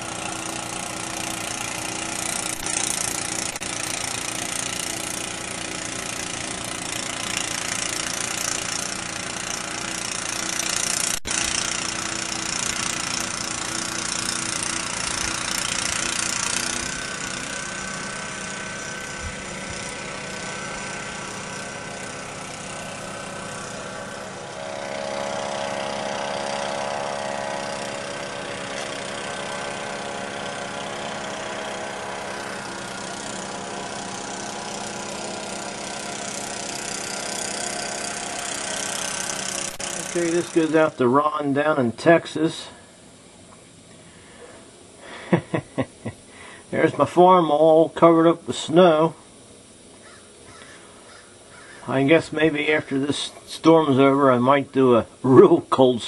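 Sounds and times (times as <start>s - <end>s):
engine running: 0.0s - 56.0s
strong hiss: 32.2s - 56.0s.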